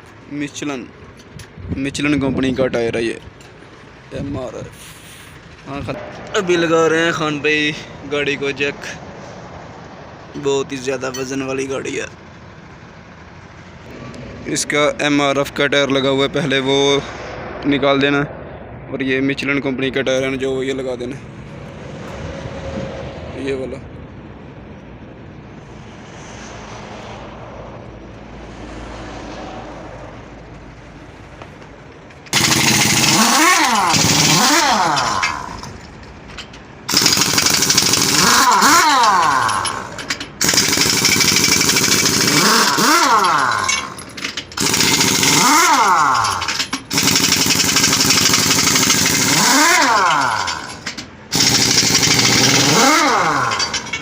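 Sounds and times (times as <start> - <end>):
pneumatic impact wrench hammering: 32.2 - 54.0.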